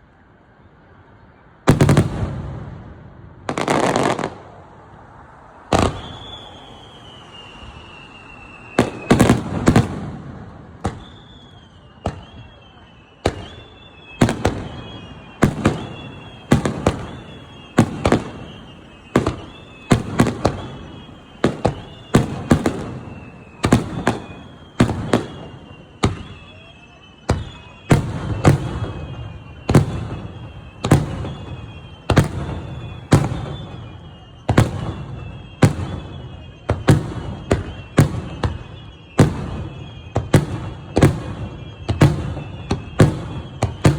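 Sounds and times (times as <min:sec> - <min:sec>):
firework shells bursting: 0:15.3 - 0:26.5.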